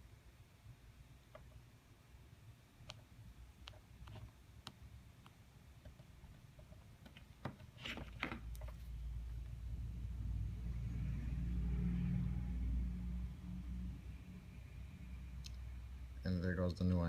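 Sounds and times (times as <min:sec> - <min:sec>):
faint clicks and taps: 0:01.3 - 0:01.6, 0:02.8 - 0:09.6
low rumble: 0:09.1 - 0:16.2.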